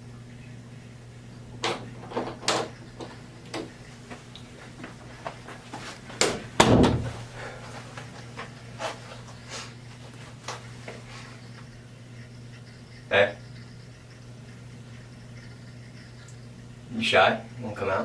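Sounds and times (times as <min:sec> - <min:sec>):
steady low hum: 0:00.0 - 0:18.0
door clicks and knocks: 0:01.6 - 0:02.8, 0:06.2 - 0:07.2
heavy door bang: 0:06.2 - 0:07.2.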